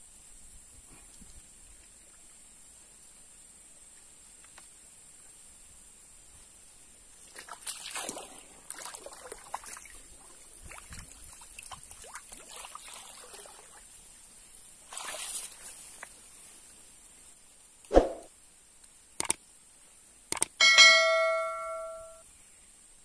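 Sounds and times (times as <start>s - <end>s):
water sloshing: 7.2s - 13.9s
short rushes of noise: 17.9s - 18.3s.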